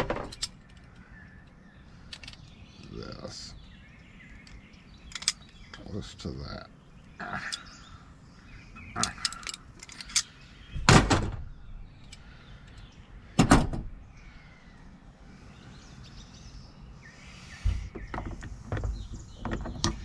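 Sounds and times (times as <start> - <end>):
lock parts clunking: 0.0 - 2.6, 4.4 - 5.8, 8.8 - 11.4, 17.7 - 20.0
light metal clicks: 4.3 - 5.8, 9.0 - 10.3.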